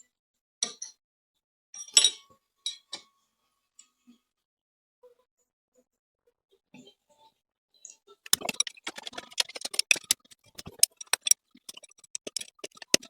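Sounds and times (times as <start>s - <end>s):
spanner clicking on metal bolts: 8.3s - 13.0s.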